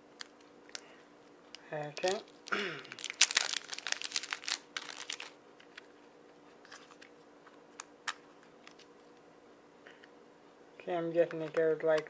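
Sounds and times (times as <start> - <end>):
packaging crinkling: 0.1 - 5.9, 6.6 - 7.1.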